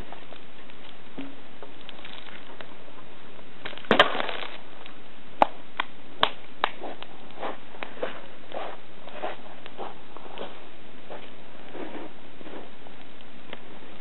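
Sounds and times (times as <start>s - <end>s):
campfire burning: 0.0s - 14.0s
sharp pops of burning wood: 3.6s - 11.8s.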